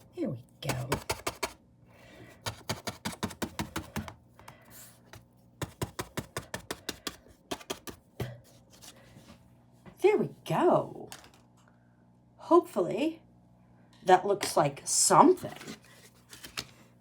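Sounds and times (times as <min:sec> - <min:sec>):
paintbrush tapping: 0:05.6 - 0:08.0.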